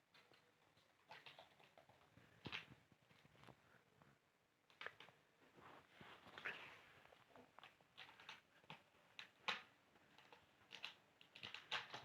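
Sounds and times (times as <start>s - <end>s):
kittens tapping and rustling: 0.0s - 3.6s, 7.2s - 12.0s.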